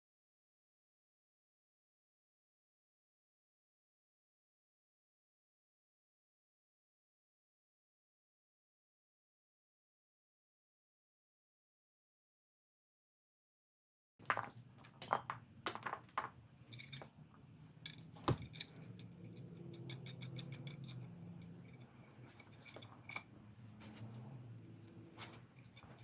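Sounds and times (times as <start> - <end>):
small hard objects clicking: 14.2 - 17.1
faint low hum: 14.5 - 26.0.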